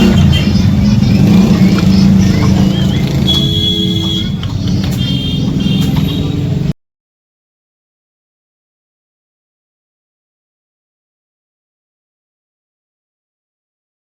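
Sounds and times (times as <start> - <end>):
motorcycle engine running: 0.0 - 6.7.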